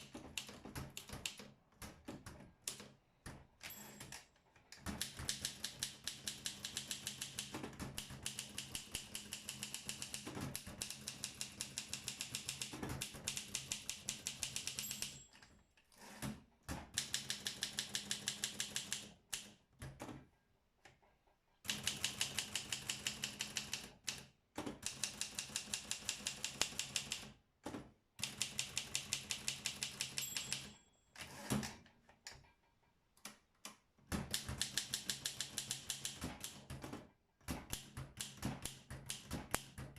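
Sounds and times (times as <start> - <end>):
typewriter keystrokes: 0.0 - 2.9, 4.8 - 15.2, 16.8 - 20.1, 21.7 - 27.3, 28.2 - 30.7, 34.1 - 39.9.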